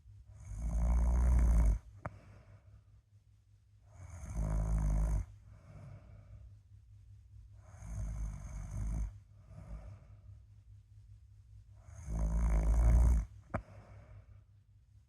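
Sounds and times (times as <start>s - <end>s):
person snoring: 0.4s - 2.2s, 3.9s - 6.1s, 7.6s - 10.0s, 11.8s - 14.1s.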